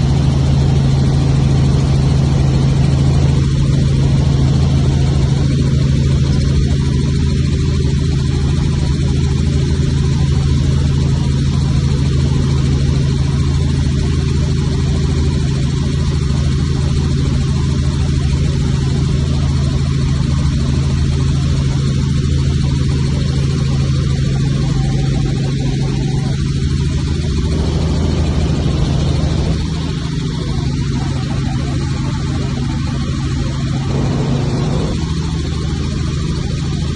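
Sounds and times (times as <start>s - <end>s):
helicopter engine and rotor drone: 0.0s - 36.9s.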